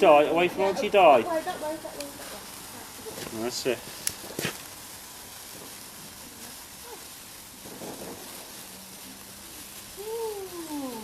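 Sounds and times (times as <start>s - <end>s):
sparkler fizzing: 0.0s - 11.0s
faint voices: 6.1s - 7.3s, 9.0s - 11.0s.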